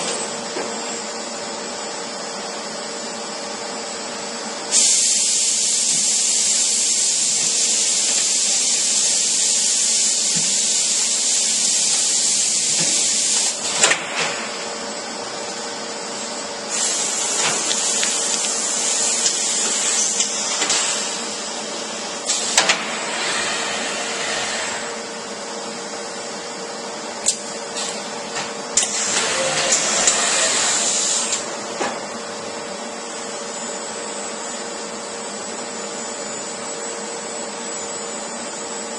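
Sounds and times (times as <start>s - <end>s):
machine hum: 0.0s - 36.8s
woodworking machine hissing rushes: 4.6s - 25.2s, 28.8s - 31.6s.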